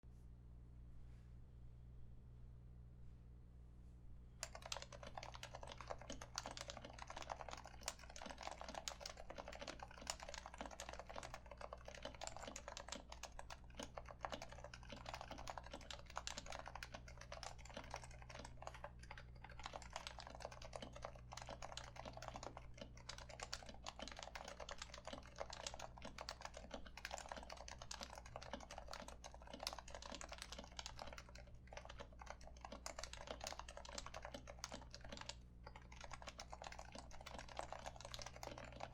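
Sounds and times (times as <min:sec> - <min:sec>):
soft muted keyboard typing: 0:04.4 - 0:38.9.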